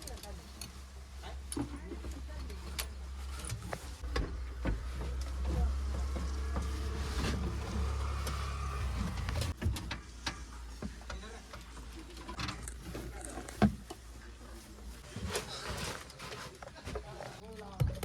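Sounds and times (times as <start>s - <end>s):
diesel engine humming: 0.0s - 12.2s
knocks and clanks: 1.4s - 14.0s.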